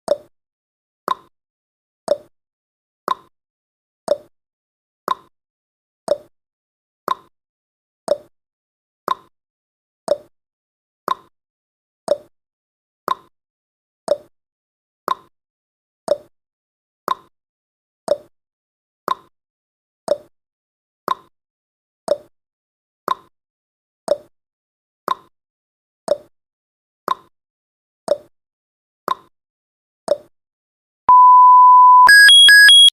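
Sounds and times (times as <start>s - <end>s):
steady high alarm beep: 31.1s - 32.9s
timer ticking: 31.1s - 32.9s.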